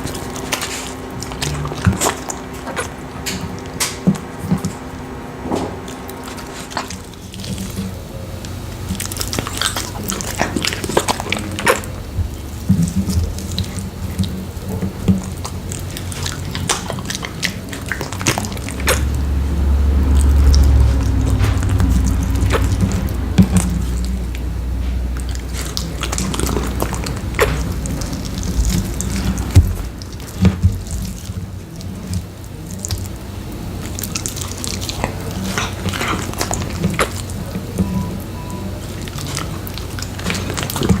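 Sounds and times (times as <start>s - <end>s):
dog chewing and licking: 0.0s - 4.9s, 5.6s - 41.0s
low rumble: 17.9s - 31.8s.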